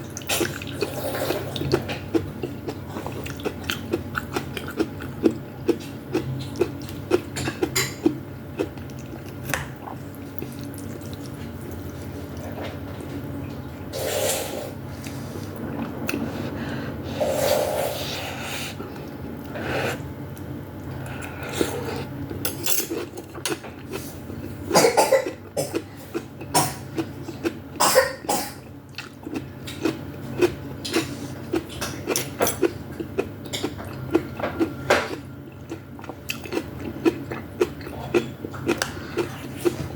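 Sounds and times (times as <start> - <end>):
chewing and slurping: 0.0 - 24.6, 28.9 - 39.9
person coughing: 24.8 - 25.8, 27.8 - 28.6.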